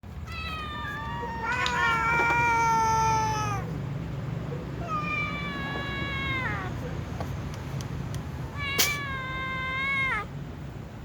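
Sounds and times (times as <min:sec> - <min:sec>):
cats meowing: 0:00.2 - 0:03.8, 0:04.5 - 0:07.2, 0:08.3 - 0:10.3.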